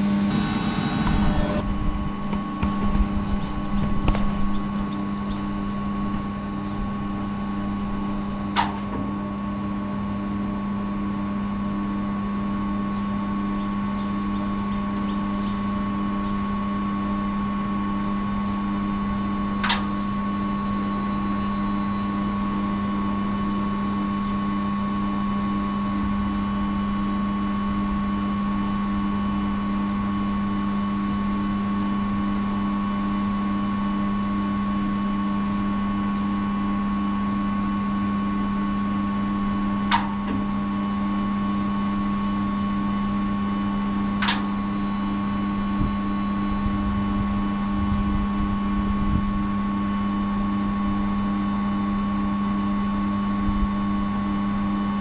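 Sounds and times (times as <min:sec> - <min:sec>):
electrical machine hum: 0:00.0 - 0:55.0.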